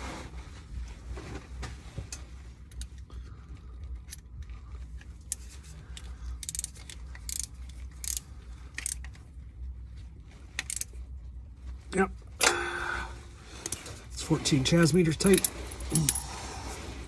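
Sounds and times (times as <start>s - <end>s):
low hum: 2.1s - 17.0s
ratchet wrench clicking: 5.3s - 9.2s, 10.6s - 10.9s.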